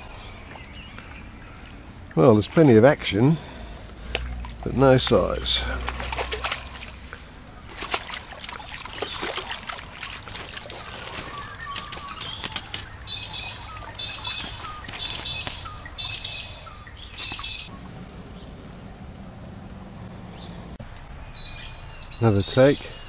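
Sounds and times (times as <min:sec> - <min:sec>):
bird calling: 0:00.0 - 0:02.4, 0:03.4 - 0:23.0
water trickling: 0:00.0 - 0:18.8
fish splashing in water: 0:04.0 - 0:17.8.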